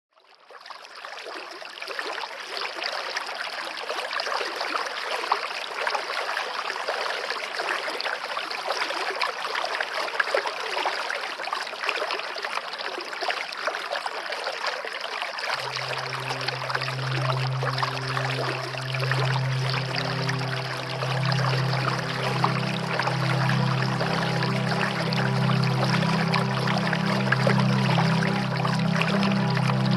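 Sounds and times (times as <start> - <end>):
water flowing and splashing: 0.3 - 29.9
low steady tone: 15.6 - 29.9.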